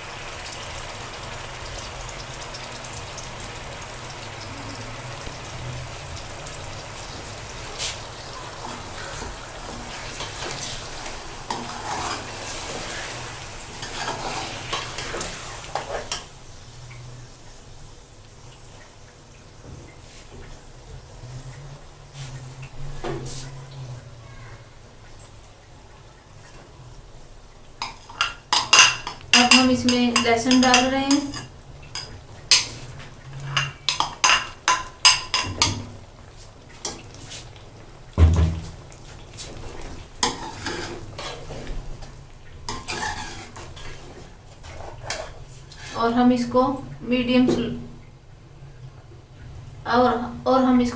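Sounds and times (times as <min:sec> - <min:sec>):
chicken and onions sizzling in oil: 0:00.0 - 0:26.8, 0:27.4 - 0:47.4
spoon scraping a pan: 0:07.0 - 0:16.3, 0:27.8 - 0:35.9, 0:39.4 - 0:42.0, 0:42.7 - 0:46.2
metal spoon clinking on pot: 0:27.8 - 0:32.8, 0:33.5 - 0:35.8.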